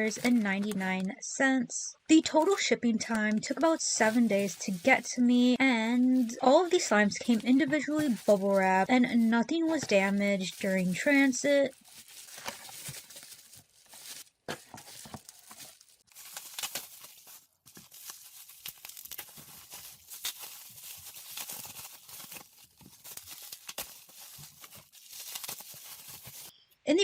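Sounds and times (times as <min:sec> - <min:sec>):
plastic wrap crinkling and tearing: 0:00.0 - 0:01.1, 0:02.2 - 0:26.5.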